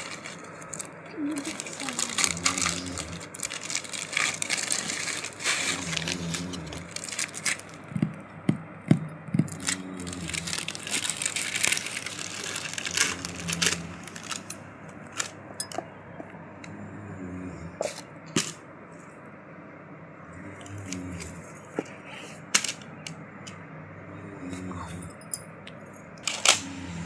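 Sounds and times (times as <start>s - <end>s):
packaging crinkling and rustling: 0.0s - 8.1s, 9.4s - 15.4s.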